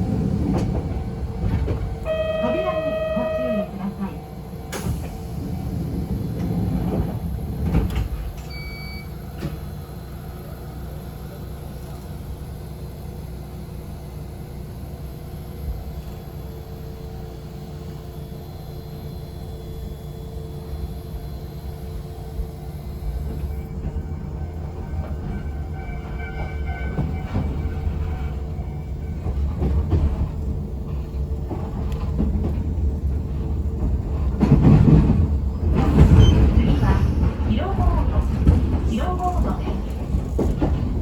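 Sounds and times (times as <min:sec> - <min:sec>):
train low rumble: 0:00.0 - 0:41.0
short beep: 0:02.1 - 0:03.8, 0:08.5 - 0:09.2.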